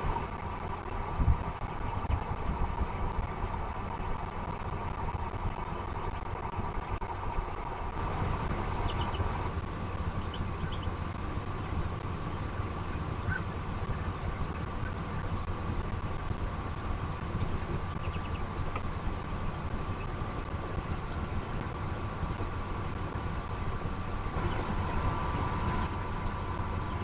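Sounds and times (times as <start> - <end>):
low outdoor rumble: 0.0 - 27.0
faint high bird chirps: 8.8 - 9.3.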